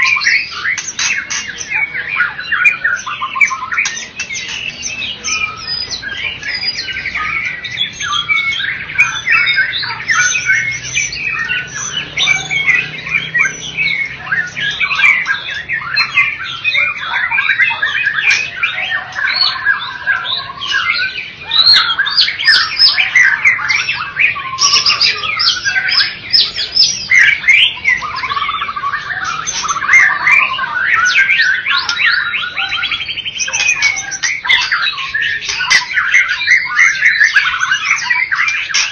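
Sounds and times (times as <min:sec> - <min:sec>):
bird singing whistled trills: 0:00.0 - 0:38.9.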